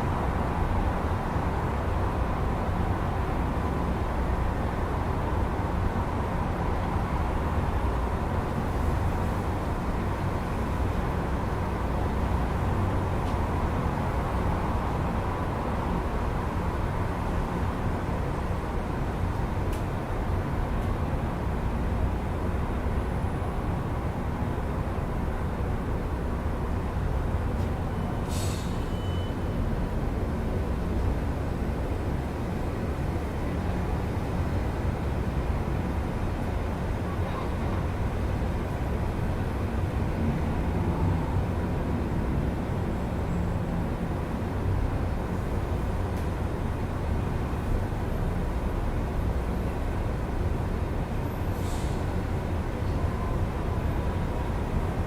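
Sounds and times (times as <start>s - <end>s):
city traffic rumble: 0.0s - 55.0s
short hiss: 28.2s - 28.9s, 51.6s - 52.0s.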